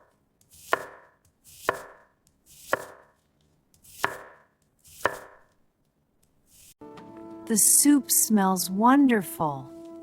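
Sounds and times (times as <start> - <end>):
knife chopping on cutting board: 0.4 - 5.6.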